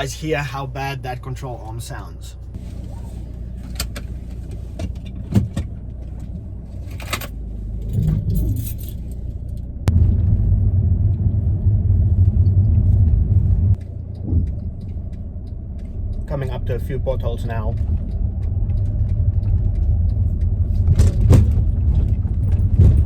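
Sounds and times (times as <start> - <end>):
car interior low drone: 0.0 - 23.0
suspension knocks and rattles: 3.5 - 10.4, 12.1 - 23.0
loud low rumble: 7.5 - 23.0.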